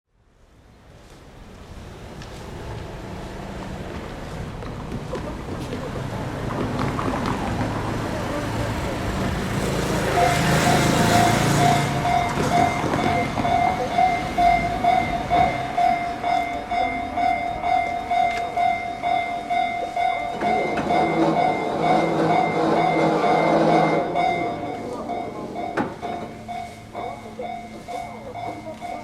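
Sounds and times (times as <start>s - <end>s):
rush of passing noise: 1.0s - 28.4s
level crossing warning bell: 8.3s - 29.0s.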